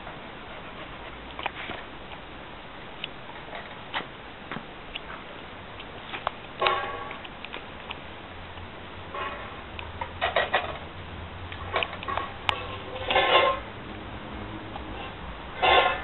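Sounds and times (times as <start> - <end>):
clicks and clatter: 10.0 - 10.8, 11.5 - 13.7.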